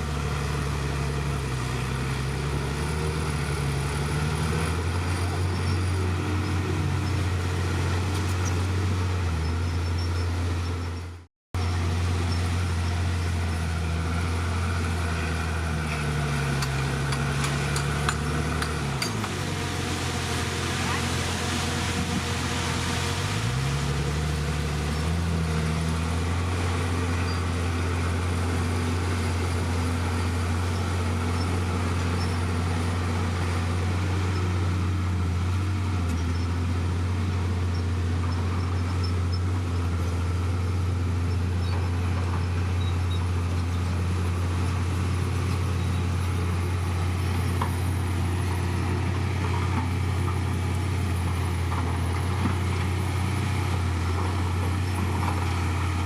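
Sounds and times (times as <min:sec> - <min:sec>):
bulldozer diesel engine running: 0:00.0 - 0:56.0.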